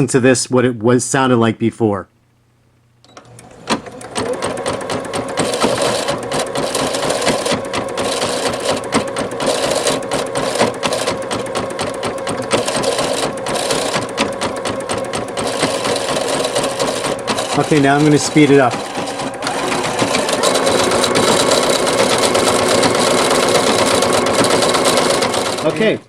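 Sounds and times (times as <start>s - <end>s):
sewing machine stitching: 3.1s - 26.0s
bobbin rattling and clanking: 3.2s - 25.8s.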